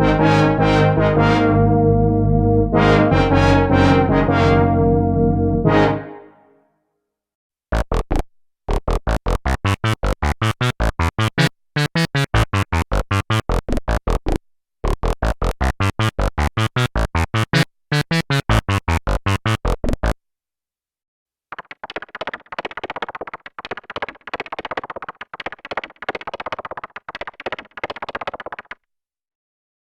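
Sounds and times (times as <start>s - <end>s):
staccato synthesizer notes: 7.8s - 20.2s.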